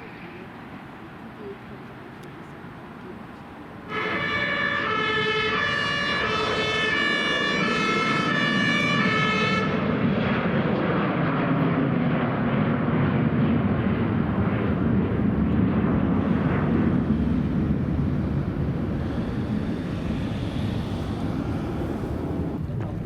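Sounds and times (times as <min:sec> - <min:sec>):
rushing traffic noise: 0:00.0 - 0:10.2, 0:14.2 - 0:23.0
two-tone emergency siren: 0:03.9 - 0:10.0.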